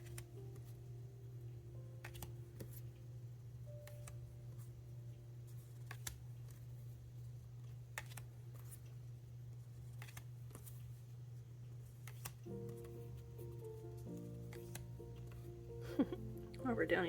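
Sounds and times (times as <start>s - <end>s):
cards clicking and tapping: 0.0s - 0.8s, 2.0s - 2.9s, 3.7s - 4.6s, 5.6s - 6.7s, 7.6s - 9.0s, 9.8s - 10.8s, 11.9s - 13.2s, 13.9s - 15.5s
steady low hum: 0.0s - 17.0s.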